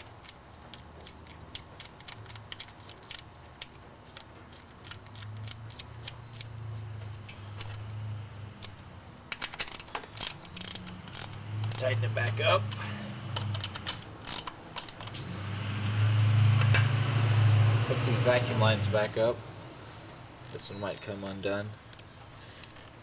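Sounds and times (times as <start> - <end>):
metallic clicks of bolts and tools: 0.0 - 8.0, 8.6 - 11.8, 13.4 - 15.2
low steady hum: 2.0 - 22.6.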